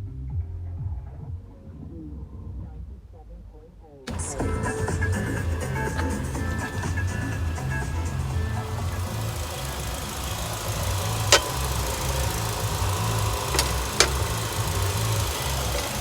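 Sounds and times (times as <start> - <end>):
car engine idling: 4.1 - 16.0
sharp clicks: 4.1 - 16.0.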